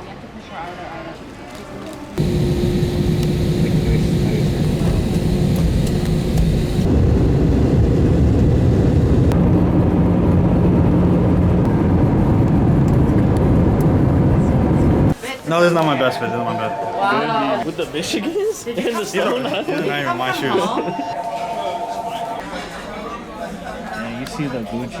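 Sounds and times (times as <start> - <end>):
steady low hum: 2.2 - 15.2
vehicle rumble: 2.2 - 15.2.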